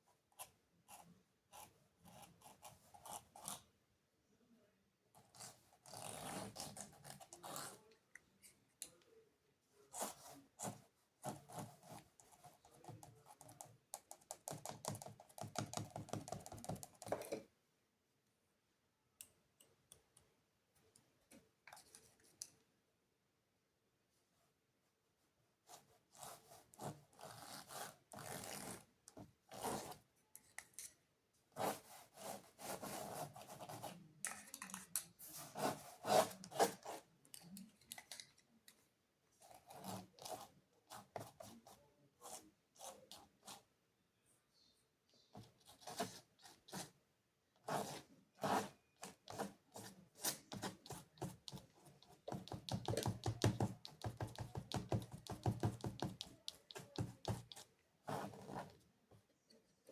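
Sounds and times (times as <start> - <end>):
paintbrush scrubbing on canvas: 35.2 - 37.1.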